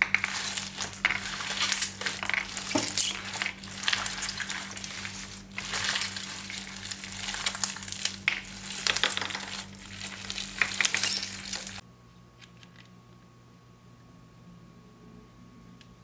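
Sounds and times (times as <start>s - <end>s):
slime squishing and crackling: 0.0s - 11.8s.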